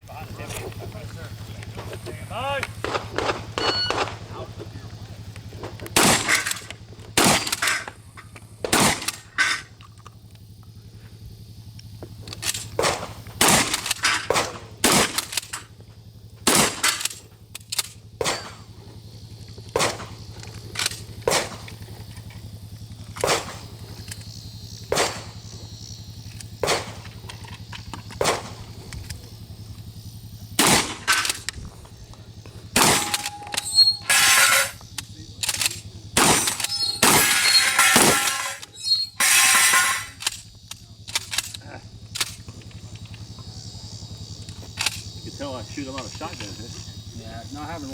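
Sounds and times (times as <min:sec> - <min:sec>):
shotgun shots: 0:01.8 - 0:05.0, 0:05.9 - 0:08.0, 0:08.6 - 0:09.6, 0:12.5 - 0:15.6, 0:16.4 - 0:17.2, 0:18.2 - 0:18.7, 0:19.7 - 0:20.2, 0:20.8 - 0:21.8, 0:23.2 - 0:23.7, 0:24.9 - 0:25.4, 0:26.6 - 0:27.1, 0:28.2 - 0:28.7, 0:30.5 - 0:31.5, 0:32.8 - 0:34.8, 0:35.4 - 0:40.4.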